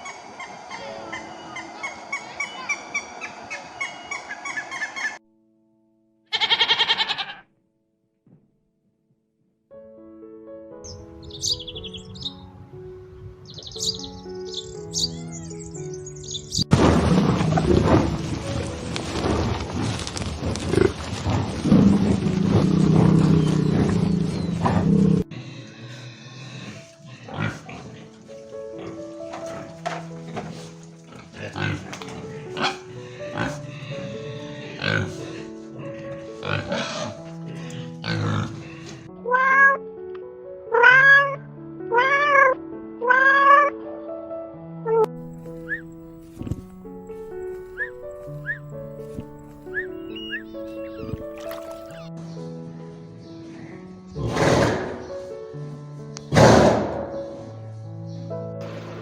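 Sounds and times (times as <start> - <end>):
background music: 0.0 - 7.4, 9.7 - 59.0
cat meowing: 6.3 - 7.4, 39.2 - 39.8, 40.7 - 43.8
large animal growling: 20.5 - 25.2.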